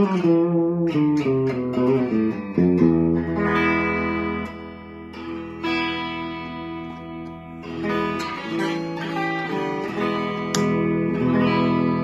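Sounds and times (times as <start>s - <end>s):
electric guitar notes and chords: 0.0s - 12.0s.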